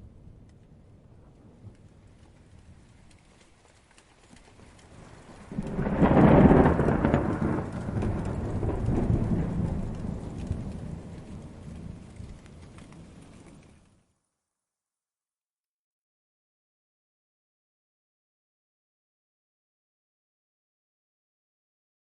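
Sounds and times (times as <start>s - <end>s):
thunder rumbling: 0.0s - 3.2s, 4.5s - 13.9s
rain pattering: 0.0s - 14.2s.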